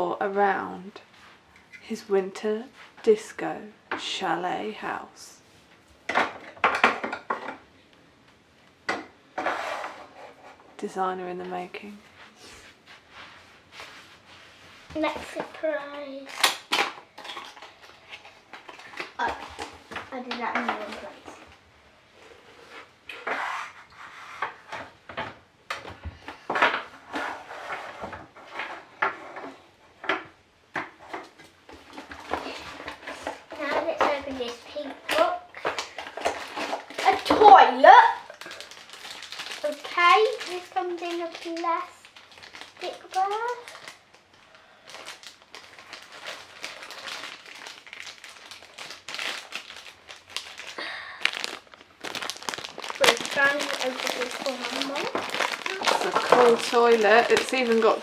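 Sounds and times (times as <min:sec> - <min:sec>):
plastic bag crinkling: 0:15.0 - 0:21.4, 0:31.8 - 0:58.0
plastic pieces clicking and knocking: 0:16.3 - 0:21.0, 0:50.6 - 0:58.0.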